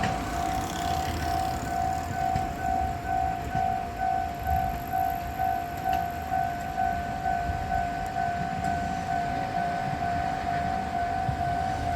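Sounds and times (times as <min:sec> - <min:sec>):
level-crossing warning bell ringing: 0:00.0 - 0:11.9.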